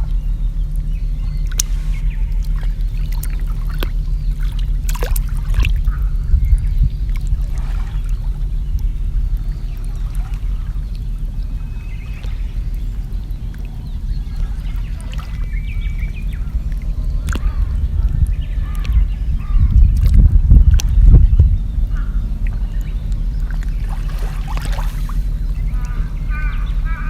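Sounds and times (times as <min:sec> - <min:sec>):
steady low rumble: 0:00.0 - 0:27.0
water trickling and lapping: 0:00.0 - 0:27.0.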